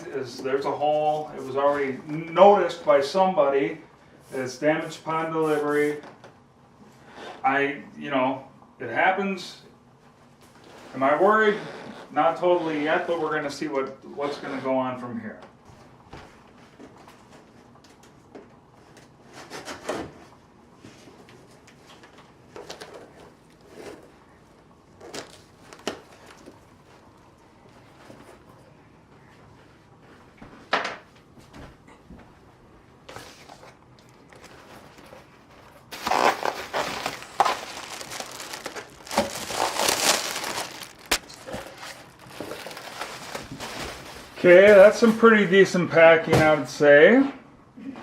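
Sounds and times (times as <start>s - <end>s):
packing material rustling: 33.3s - 44.9s.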